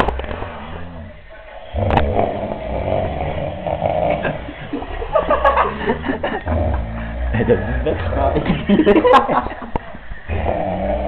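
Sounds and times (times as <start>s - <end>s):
broken breathing: 0.0s - 8.4s
person snoring: 0.0s - 8.4s.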